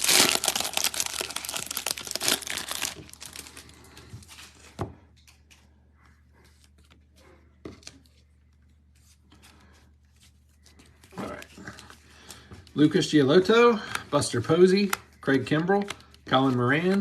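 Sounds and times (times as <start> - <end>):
plastic wrapping crinkling: 0.0 - 4.7.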